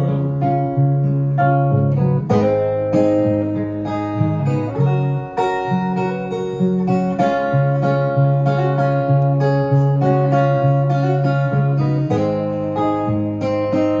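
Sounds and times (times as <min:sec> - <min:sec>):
solo guitar chords: 0:00.0 - 0:14.0.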